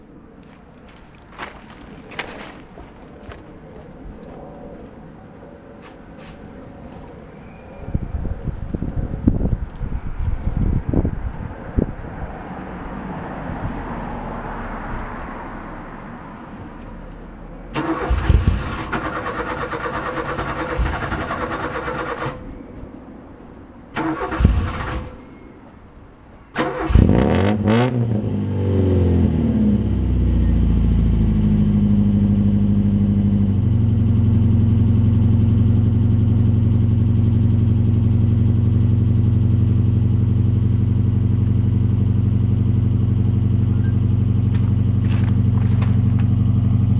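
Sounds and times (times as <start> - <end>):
car engine idling: 14.1 - 27.1, 29.7 - 46.9.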